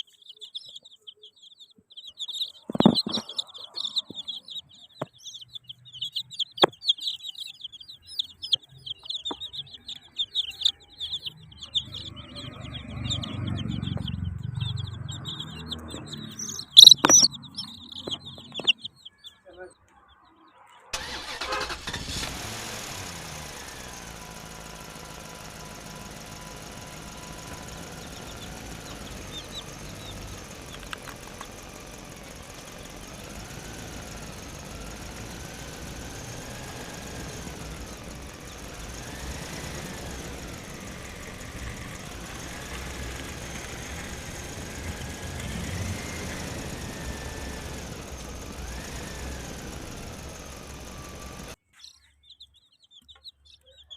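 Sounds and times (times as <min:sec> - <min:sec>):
engine-like running sound: 0:02.3 - 0:18.9, 0:21.0 - 0:51.6
thin rising and falling tone: 0:11.3 - 0:18.4, 0:21.0 - 0:51.6.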